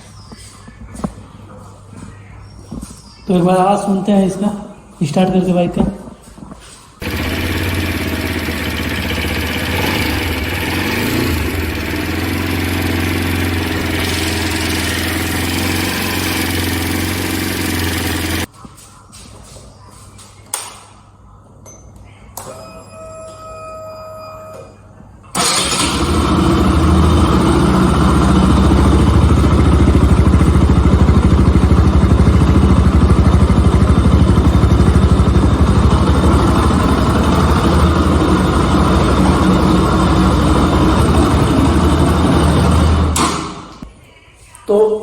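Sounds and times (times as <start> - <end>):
motorcycle engine idling: 7.0 - 18.5, 25.4 - 43.8.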